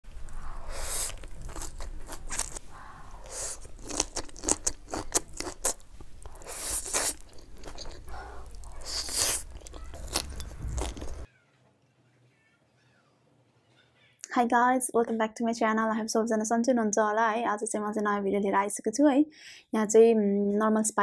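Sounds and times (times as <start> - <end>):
person biting and chewing food: 0.2 - 11.3.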